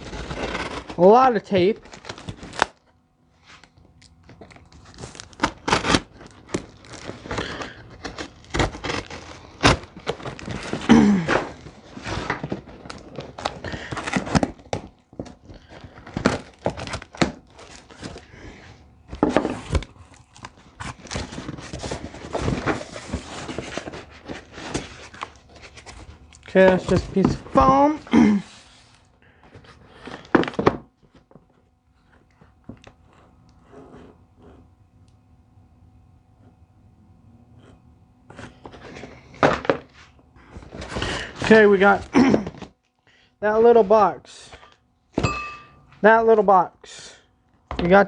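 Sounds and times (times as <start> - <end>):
packing tape tearing: 0.0 - 1.0, 1.7 - 2.9, 3.5 - 30.9
packing material crinkling: 0.0 - 31.3
cardboard flaps rustling and thunking: 5.0 - 18.3, 19.1 - 28.9, 29.5 - 31.5, 38.3 - 42.7.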